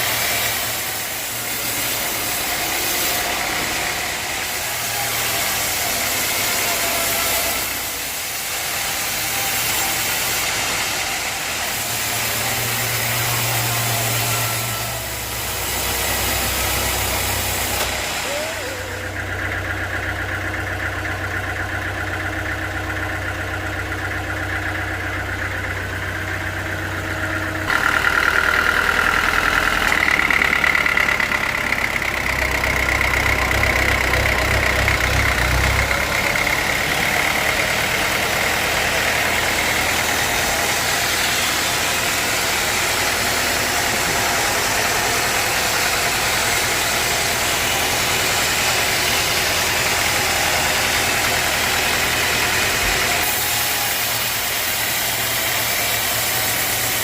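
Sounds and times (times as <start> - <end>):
sawmill engine running: 0.0 - 57.0.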